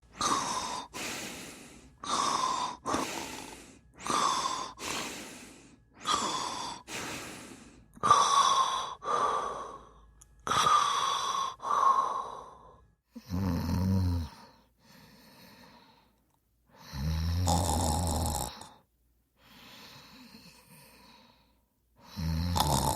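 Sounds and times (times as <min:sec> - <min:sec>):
person snoring: 0:00.1 - 0:14.6, 0:16.8 - 0:18.8, 0:22.0 - 0:22.9.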